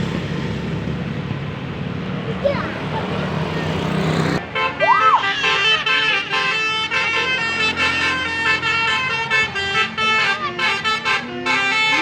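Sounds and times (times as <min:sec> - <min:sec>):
melodic bus horn tune: 0:04.4 - 0:12.0.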